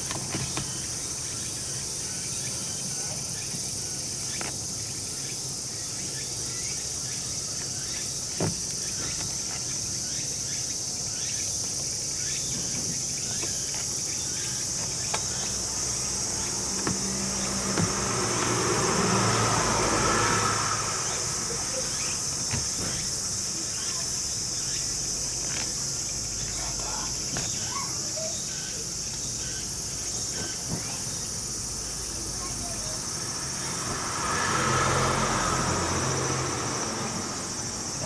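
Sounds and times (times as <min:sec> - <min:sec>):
high-pitched insect chorus: 0:00.0 - 0:38.0.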